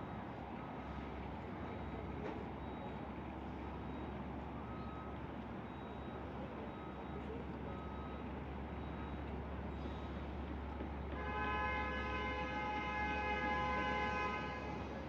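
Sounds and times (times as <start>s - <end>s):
low rumble of heavy machinery: 0.0s - 15.0s
reversing alarm beeping: 1.6s - 11.2s.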